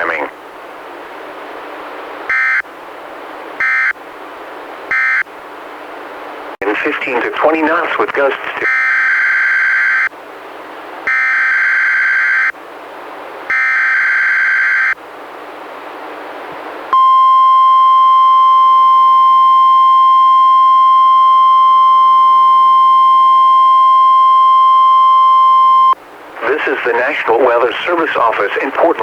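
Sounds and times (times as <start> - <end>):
radio hiss: 0.0 - 0.4, 6.6 - 8.7, 26.3 - 29.0
steady alarm tone: 2.3 - 2.6, 3.6 - 4.0, 4.9 - 5.3, 8.7 - 10.1, 11.1 - 12.6, 13.5 - 15.0, 16.9 - 26.0.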